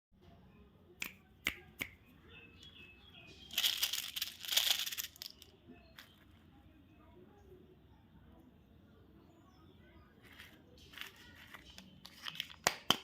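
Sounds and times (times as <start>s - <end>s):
candy wrapper crinkling and tearing: 3.5s - 5.5s, 10.8s - 12.8s.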